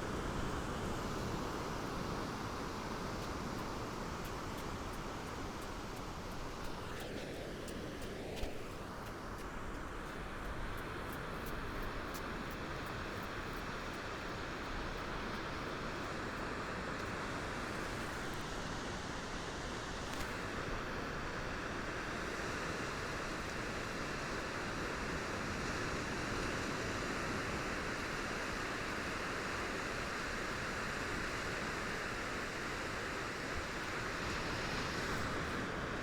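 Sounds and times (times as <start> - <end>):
ocean waves lapping on shore: 20.3 - 36.0.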